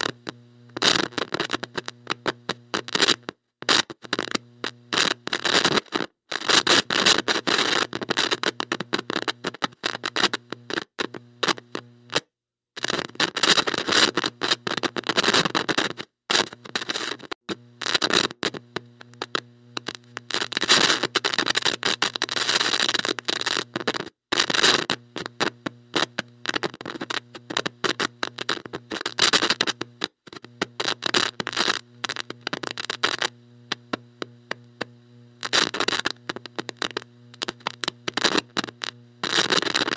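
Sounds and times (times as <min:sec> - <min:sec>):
electronic static hiss and crackle: 0:00.0 - 0:39.9
steady electrical hum: 0:18.6 - 0:21.2, 0:29.7 - 0:39.9.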